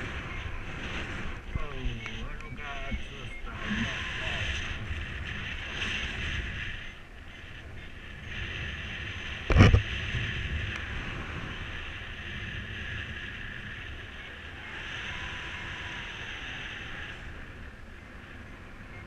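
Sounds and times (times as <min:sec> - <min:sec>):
wind rushing over microphone: 0:00.0 - 0:19.0.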